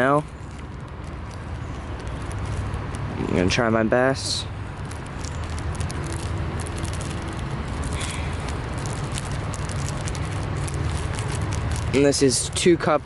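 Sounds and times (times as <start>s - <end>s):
powder crackling into plastic bottle: 0.0s - 13.0s
steady low rumble: 0.0s - 13.0s.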